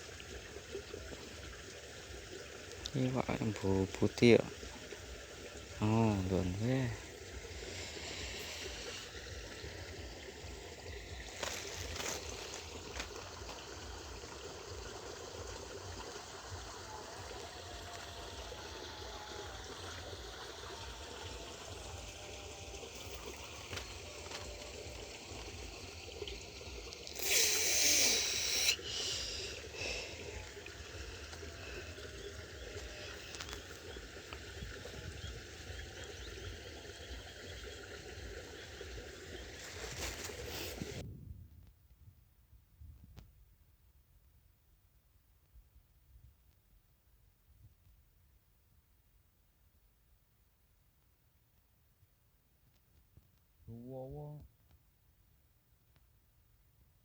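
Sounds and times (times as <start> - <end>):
water trickling in a ditch: 0.0 - 41.0.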